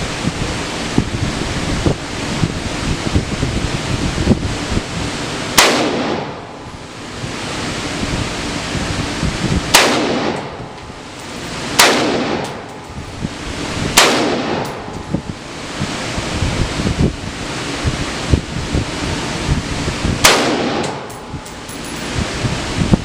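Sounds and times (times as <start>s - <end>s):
wind buffeting microphone: 0.0s - 5.4s, 6.2s - 23.0s
rifle shots: 5.5s - 6.4s, 9.7s - 10.6s, 11.6s - 12.7s, 13.9s - 14.9s, 20.2s - 21.1s.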